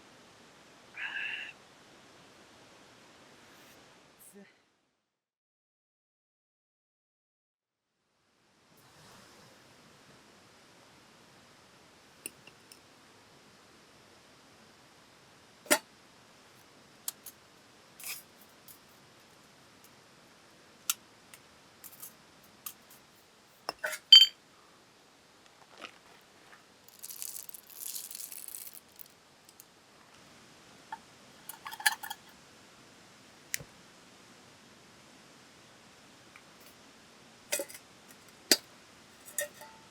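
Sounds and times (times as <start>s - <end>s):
small objects clicking and knocking: 17.1s - 17.4s, 26.8s - 29.8s
sharp ringing clink: 24.1s - 24.4s
high rustling hiss: 26.1s - 30.0s.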